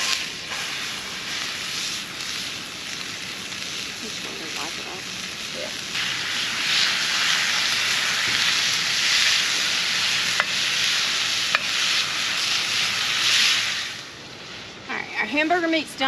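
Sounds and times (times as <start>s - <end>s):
meat sizzling in a frying pan: 0.0s - 16.0s.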